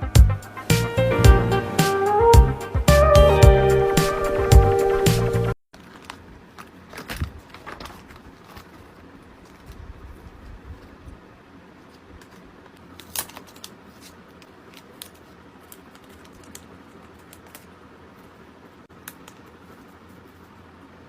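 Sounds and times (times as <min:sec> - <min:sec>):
hands handling packing materials: 0:05.7 - 0:11.0, 0:11.8 - 0:18.3.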